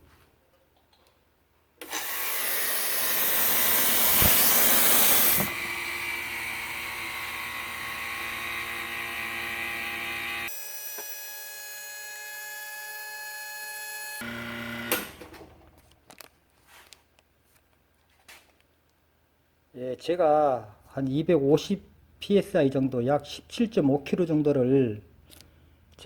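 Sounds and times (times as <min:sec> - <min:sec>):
pressurized gas hissing: 0:01.9 - 0:05.6.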